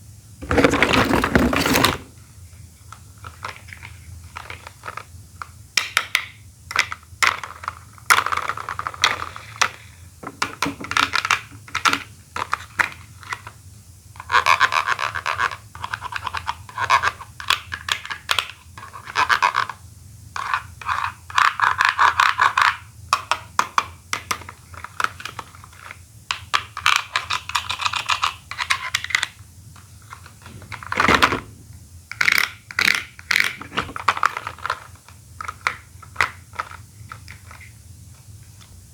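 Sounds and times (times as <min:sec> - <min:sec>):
plastic toys clicking and snapping: 0:21.4 - 0:31.4, 0:32.1 - 0:37.7.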